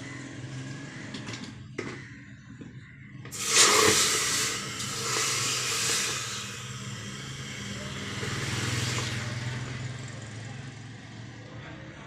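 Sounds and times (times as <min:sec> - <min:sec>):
low motor hum: 0:02.8 - 0:11.0
tap water rushing: 0:03.3 - 0:09.8.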